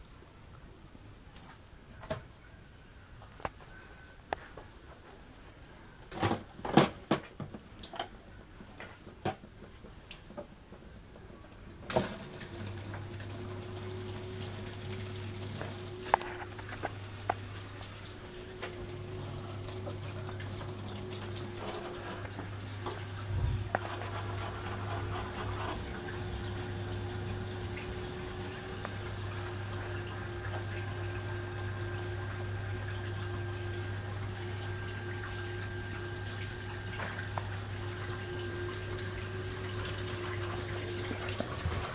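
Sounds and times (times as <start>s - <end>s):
water running from tap: 11.9s - 41.9s.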